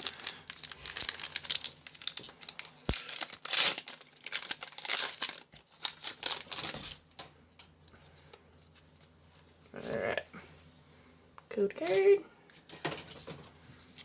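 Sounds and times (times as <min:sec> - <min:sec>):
foil wrapper crinkling and tearing: 0:00.0 - 0:07.1.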